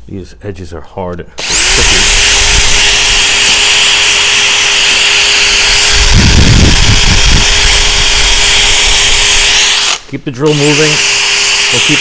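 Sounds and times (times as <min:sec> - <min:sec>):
power drill whine: 0:01.4 - 0:12.0.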